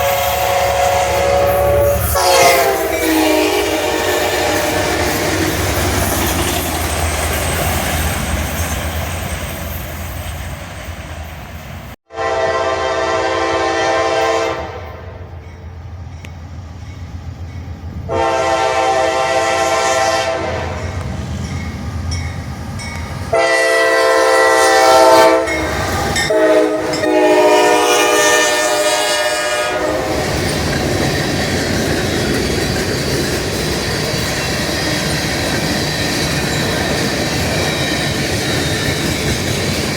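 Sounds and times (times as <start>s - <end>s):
train air horn blasts: 0.0s - 6.0s, 12.1s - 15.4s, 18.1s - 21.0s, 23.3s - 30.5s
train clattering along rails: 0.0s - 12.0s, 13.0s - 39.9s.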